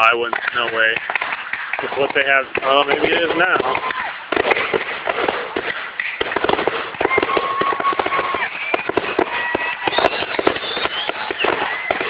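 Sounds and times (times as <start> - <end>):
fireworks bangs and crackles: 0.0 - 12.0
firework whistling tone: 2.9 - 12.0.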